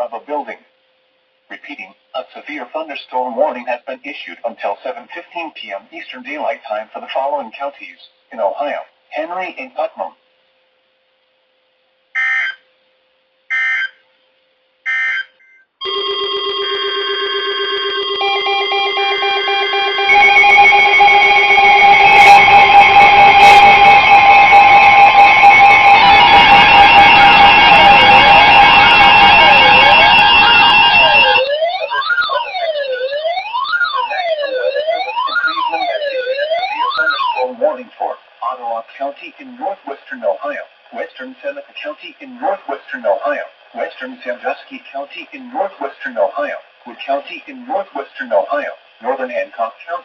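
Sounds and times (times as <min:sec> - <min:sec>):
siren wailing: 0:12.1 - 0:12.6, 0:13.5 - 0:14.0, 0:14.8 - 0:38.2
electronic alarm tones and beeps: 0:12.2 - 0:12.7, 0:13.5 - 0:14.0, 0:14.9 - 0:37.6
screeching digital data bursts: 0:17.9 - 0:37.7.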